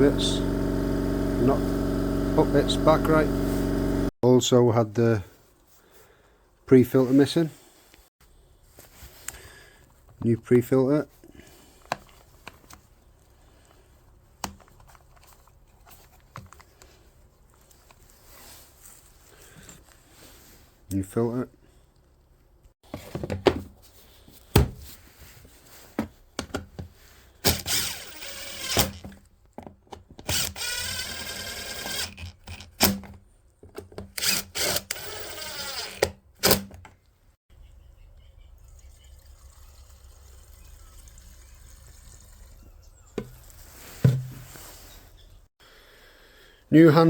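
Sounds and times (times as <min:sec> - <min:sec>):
power driver whirring: 0:00.0 - 0:04.1, 0:27.4 - 0:29.2, 0:30.2 - 0:33.0, 0:34.1 - 0:36.7
tools and parts knocking: 0:44.1 - 0:44.4.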